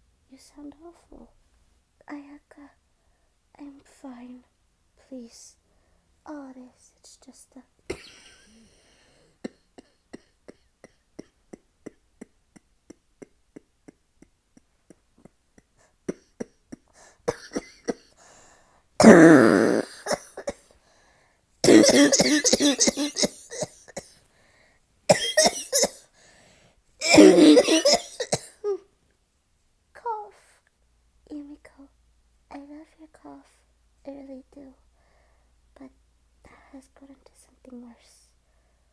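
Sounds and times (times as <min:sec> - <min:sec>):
woman coughing hard: 0:07.9 - 0:08.6, 0:16.1 - 0:18.2, 0:19.0 - 0:20.6, 0:21.6 - 0:24.1, 0:25.1 - 0:26.0, 0:27.0 - 0:28.7.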